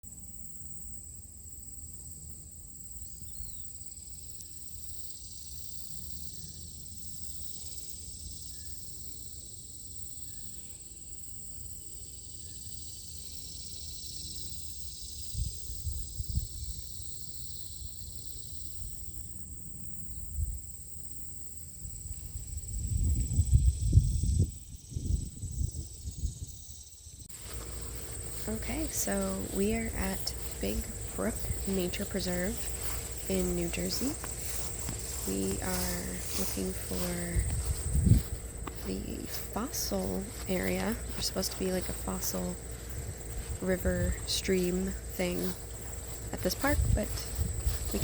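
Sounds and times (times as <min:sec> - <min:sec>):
insects chirring: 0:00.0 - 0:48.0.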